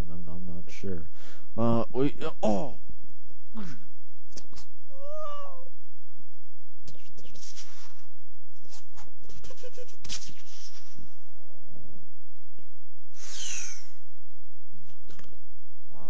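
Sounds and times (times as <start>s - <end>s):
steady low hum: 0.0s - 16.0s
meow-like cry: 4.9s - 5.7s.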